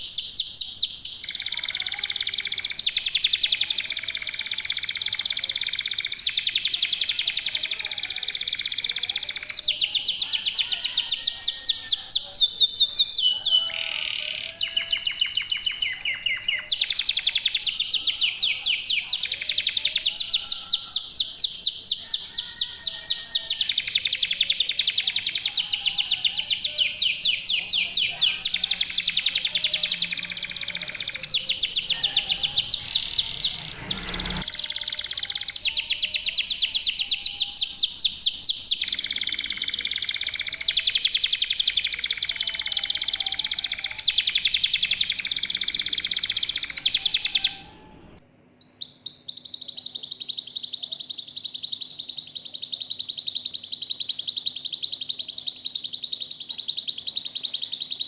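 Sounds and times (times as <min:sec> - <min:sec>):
canaries singing trills: 0:00.0 - 0:58.0.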